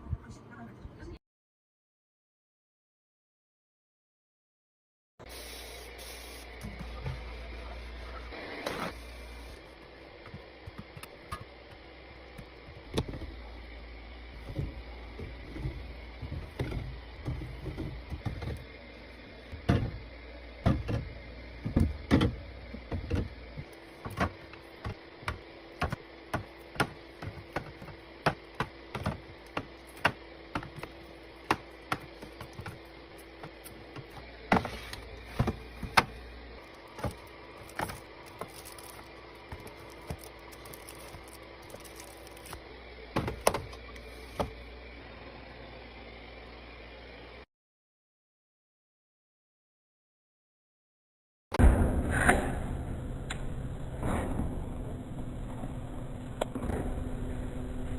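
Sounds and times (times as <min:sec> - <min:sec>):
items tapping and clacking: 0:21.6 - 0:36.2, 0:36.8 - 0:42.6.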